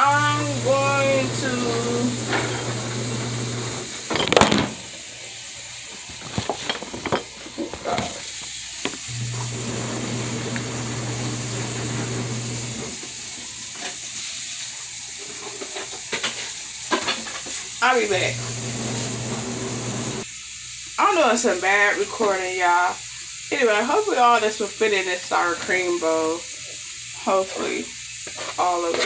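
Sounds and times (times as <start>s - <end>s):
kitchen clatter: 0.0s - 20.2s, 28.2s - 29.0s.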